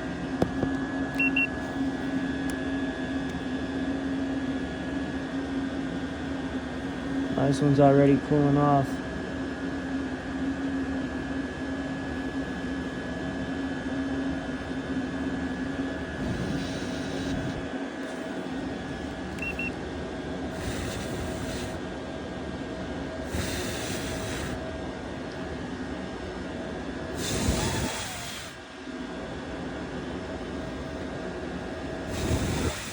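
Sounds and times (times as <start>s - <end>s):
heater fan and burner hum: 0.0s - 32.9s
short hissing rushes: 16.2s - 17.6s, 20.6s - 21.8s, 23.3s - 24.6s, 27.2s - 28.6s, 32.1s - 32.9s.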